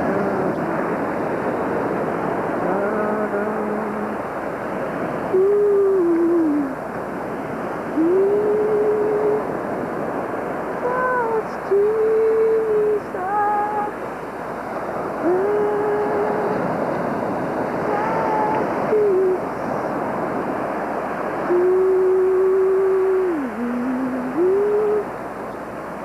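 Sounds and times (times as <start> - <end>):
person humming a hymn tune: 0.0 - 1.2, 2.4 - 4.3, 5.2 - 7.1, 7.8 - 10.1, 10.8 - 14.0, 15.0 - 20.1, 21.2 - 25.2
ocean surf rushing: 0.0 - 26.0.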